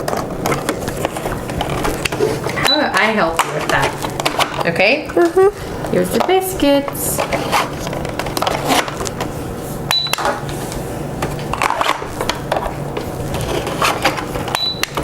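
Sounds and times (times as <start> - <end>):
toy cash register beeping: 9.9 - 10.3, 14.5 - 15.0.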